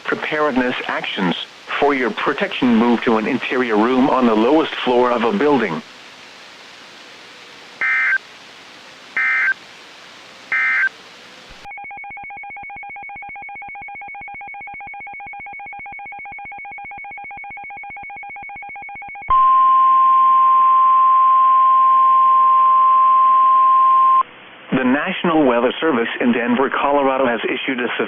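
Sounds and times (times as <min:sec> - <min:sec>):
single-pitch warning alarm tone: 0:07.8 - 0:08.2, 0:09.2 - 0:09.6, 0:10.5 - 0:10.9
warbling data bursts: 0:07.8 - 0:08.2.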